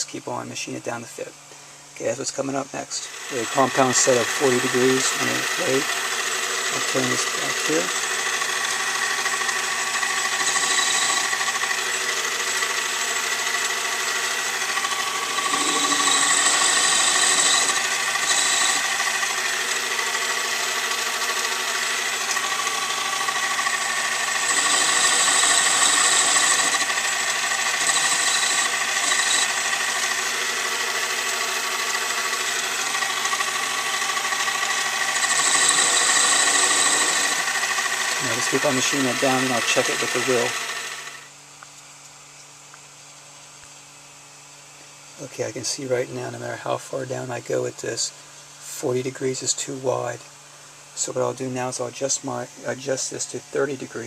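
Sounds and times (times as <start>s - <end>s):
metal lathe motor whine: 2.9s - 41.4s.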